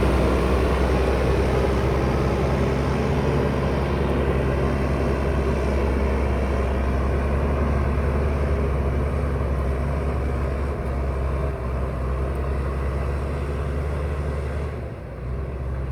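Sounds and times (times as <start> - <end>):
diesel engine running: 0.0 - 11.6.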